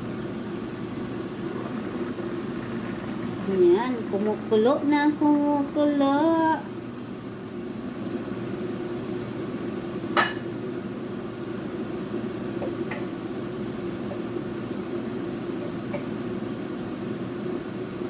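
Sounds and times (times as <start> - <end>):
pot boiling with low rumble: 0.0 - 18.0.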